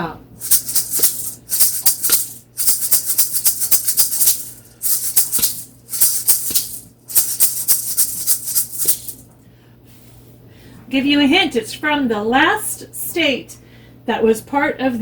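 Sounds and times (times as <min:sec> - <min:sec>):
gourd rattle shaken: 0:00.4 - 0:09.2.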